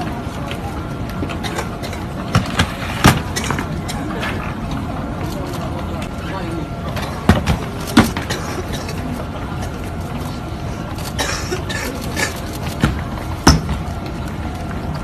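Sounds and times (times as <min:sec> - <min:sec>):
low background noise: 0:00.0 - 0:15.0
man coughing: 0:11.2 - 0:12.4.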